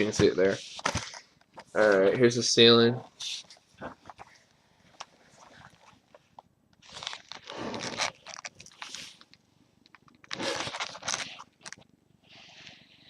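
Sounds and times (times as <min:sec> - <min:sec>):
rustling and scraping: 0:03.0 - 0:13.0.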